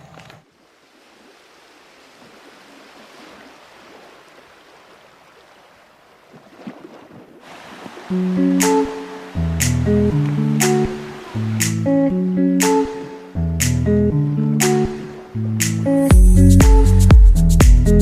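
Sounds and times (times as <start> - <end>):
river water flowing: 0.0 - 13.5, 14.2 - 16.1
acoustic guitar music: 8.1 - 18.0.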